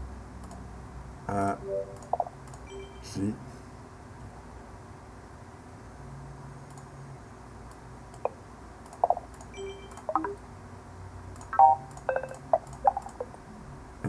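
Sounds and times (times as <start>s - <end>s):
computer alert beeps and chimes: 1.4s - 3.2s, 9.0s - 10.4s, 11.5s - 13.4s.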